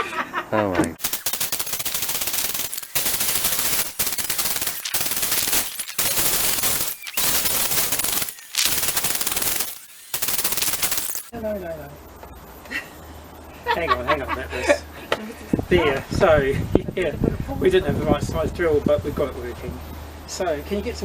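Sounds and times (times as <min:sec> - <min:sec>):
power drill boring plastic: 0:01.0 - 0:11.3.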